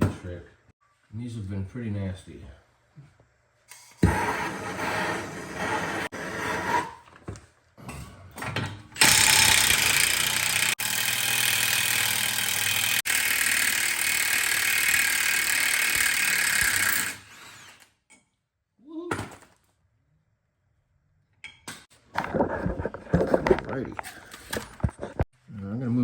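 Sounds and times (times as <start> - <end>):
impact wrench running: 9.0 - 17.9.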